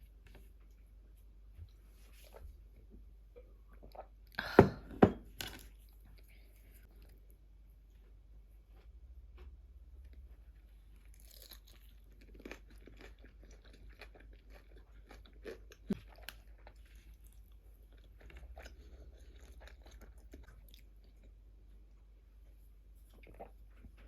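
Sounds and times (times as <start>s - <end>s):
person chewing crunchy food: 8.0s - 21.8s.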